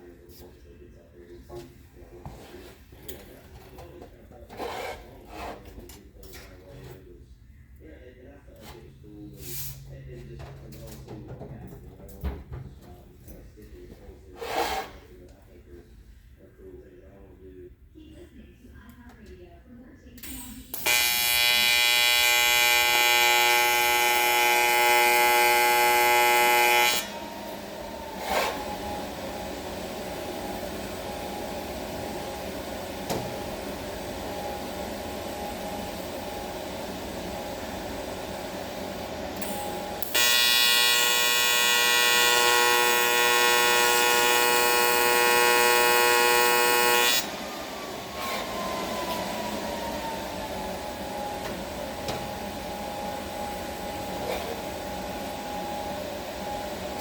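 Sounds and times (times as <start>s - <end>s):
welding arc buzzing: 20.4s - 27.4s, 34.0s - 47.3s.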